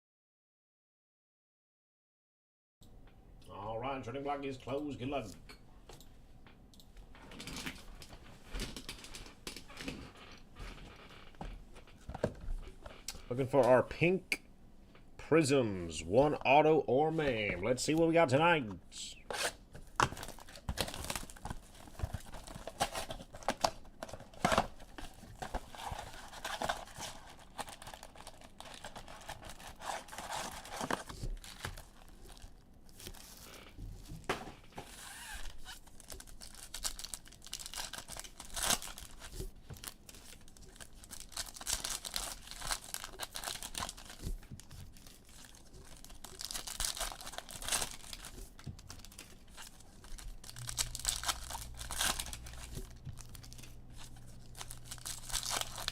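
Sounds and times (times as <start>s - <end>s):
card packs torn open: 19.3s - 33.6s, 34.9s - 55.9s
foil wrappers crinkling: 19.3s - 34.2s, 34.9s - 55.9s.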